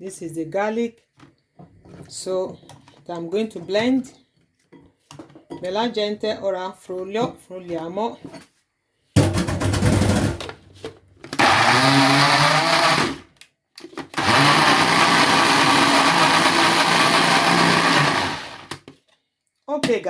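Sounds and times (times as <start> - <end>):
blender running: 11.4 - 13.3, 14.0 - 18.8.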